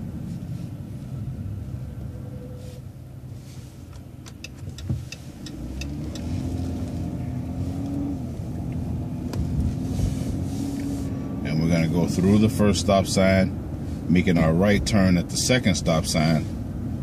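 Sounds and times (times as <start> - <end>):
bus engine running: 0.0 - 17.0.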